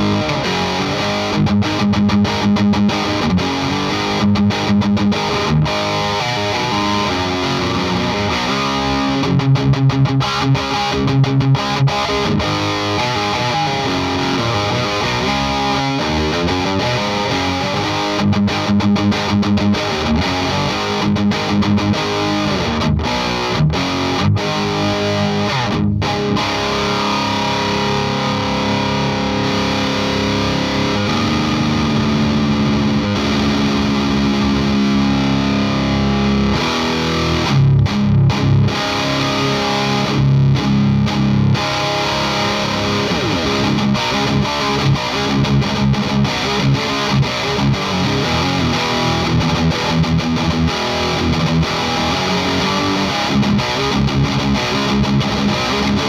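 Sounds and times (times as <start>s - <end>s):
distorted electric guitar: 0.0s - 56.0s.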